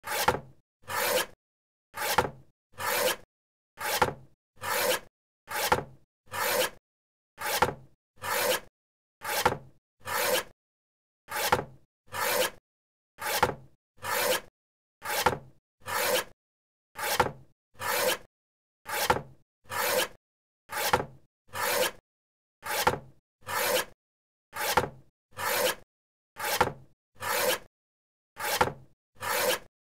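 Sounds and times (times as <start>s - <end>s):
paper cutter slicing and clicking: 0.0s - 1.4s, 2.0s - 3.2s, 3.8s - 6.8s, 7.4s - 8.6s, 9.2s - 10.5s, 11.3s - 12.6s, 13.2s - 14.4s, 15.0s - 16.3s, 17.0s - 18.3s, 18.9s - 20.1s, 20.7s - 22.0s, 22.7s - 23.9s, 24.6s - 25.8s, 26.4s - 27.7s, 28.4s - 29.7s.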